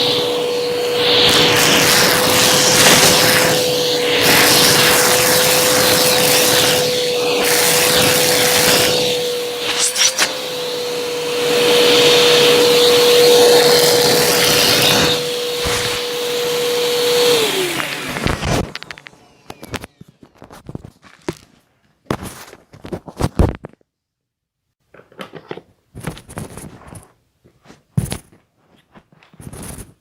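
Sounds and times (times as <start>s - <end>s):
vacuum cleaner motor whine: 0.0s - 20.8s.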